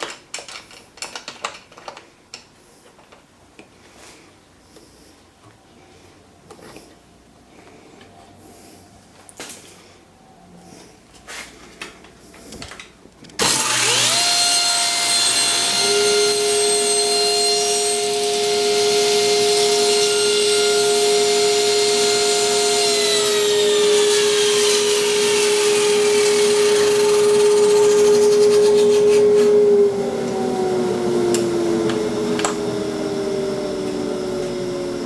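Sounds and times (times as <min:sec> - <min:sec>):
table saw motor whining: 0:13.4 - 0:35.0
second steady motor tone: 0:25.8 - 0:35.0.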